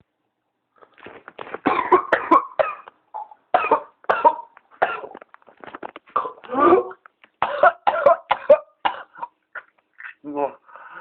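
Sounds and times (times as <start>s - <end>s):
person coughing in rapid runs: 1.6s - 2.8s.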